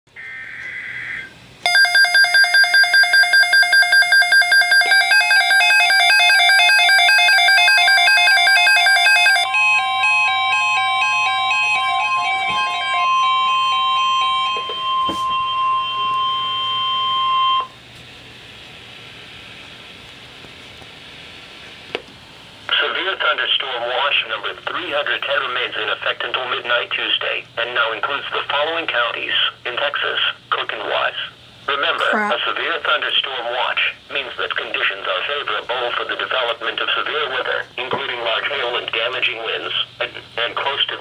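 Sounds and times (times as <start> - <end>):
rapid electronic beeping: 1.7 - 14.4
steady alert tone: 1.7 - 17.7.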